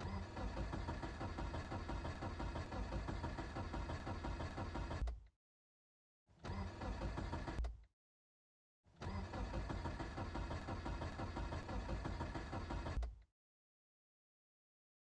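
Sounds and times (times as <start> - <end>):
car engine cranking: 0.0 - 5.2, 6.4 - 7.8, 9.0 - 13.2.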